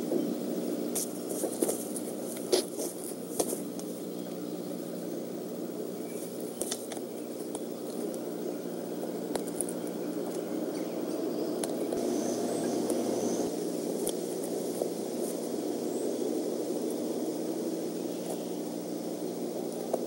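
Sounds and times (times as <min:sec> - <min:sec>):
road vehicle rumble: 0:00.0 - 0:20.0
sharp clicks: 0:11.6 - 0:12.0.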